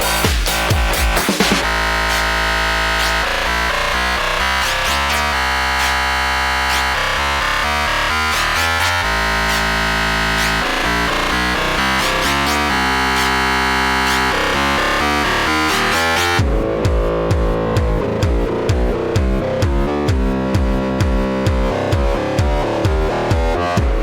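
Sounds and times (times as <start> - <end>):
electronic dance music: 0.0 - 24.0
swooshing sweeps: 4.4 - 16.2.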